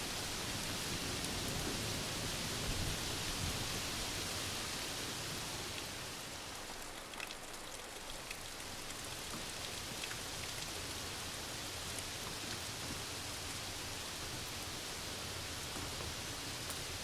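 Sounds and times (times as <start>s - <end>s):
steady rain hiss: 0.0s - 17.0s
raindrops ticking: 6.6s - 11.0s.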